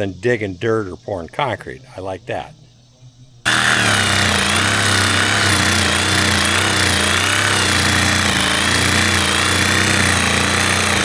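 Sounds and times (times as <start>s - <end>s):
reciprocating saw cutting wood: 3.5s - 11.0s.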